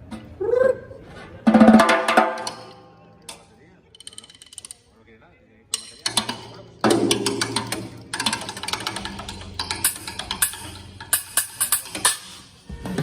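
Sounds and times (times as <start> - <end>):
ringing cymbals: 9.9 - 13.0
drum kit fast fills: 11.2 - 13.0.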